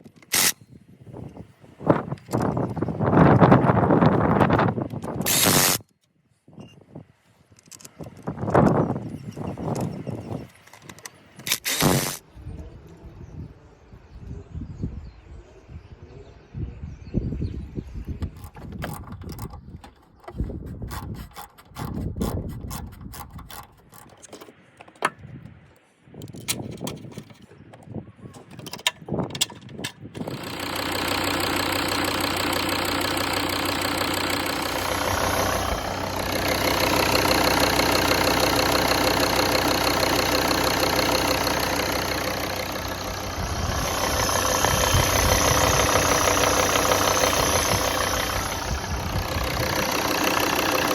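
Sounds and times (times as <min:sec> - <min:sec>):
diesel engine starting and running: 0:00.0 - 0:05.8, 0:07.6 - 0:12.6, 0:29.7 - 0:50.9.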